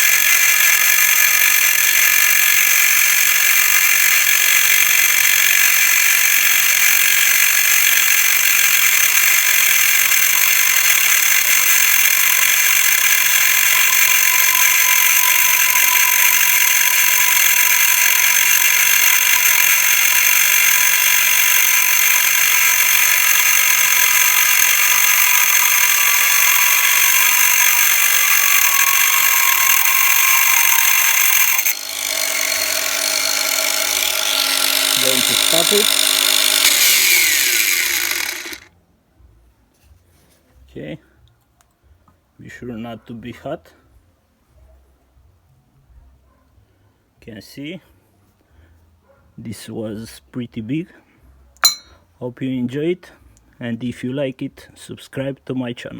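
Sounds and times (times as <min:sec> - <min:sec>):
angle grinder cutting metal: 0:00.0 - 0:38.7, 0:51.6 - 0:52.0
grinder motor running: 0:00.0 - 0:38.7.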